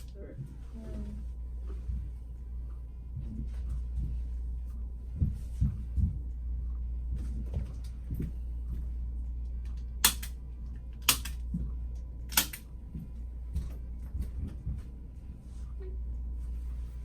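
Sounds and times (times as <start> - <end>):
steady low hum: 0.0 - 17.0
spring-loaded instrument clicks: 10.0 - 10.4, 11.0 - 11.4, 12.3 - 12.6.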